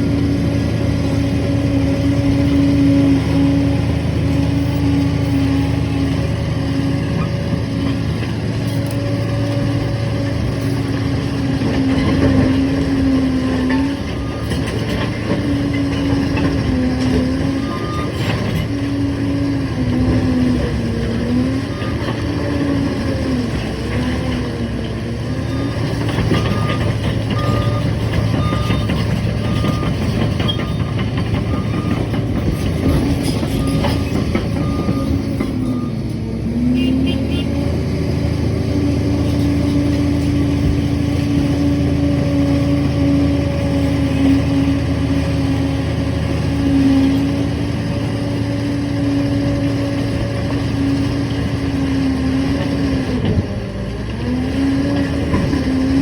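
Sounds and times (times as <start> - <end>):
bulldozer diesel engine: 0.0 - 56.0
reversing alarm beeping: 25.5 - 32.5, 33.5 - 36.1.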